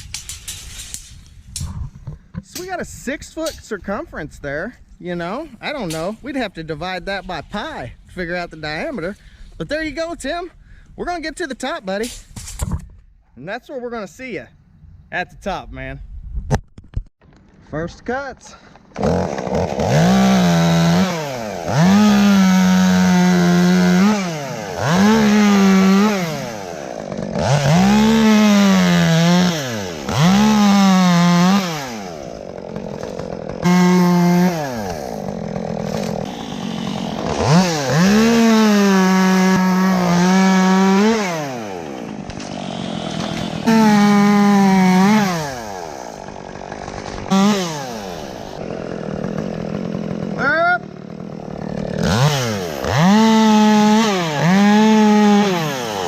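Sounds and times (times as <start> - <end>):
chainsaw revving: 18.8 - 56.0.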